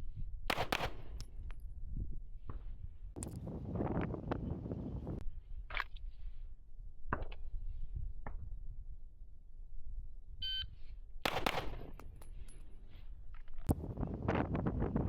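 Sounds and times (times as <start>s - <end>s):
pistol shot: 0.5s - 1.1s, 11.2s - 12.0s.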